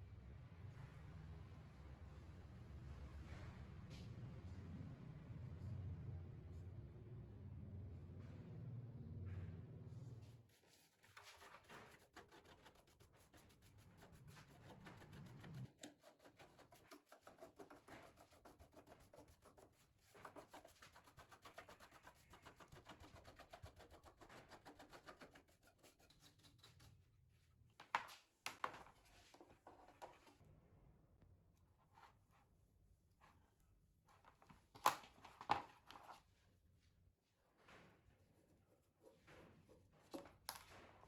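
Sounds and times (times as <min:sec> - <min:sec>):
fast rubbing strokes on a surface: 0:10.5 - 0:26.8.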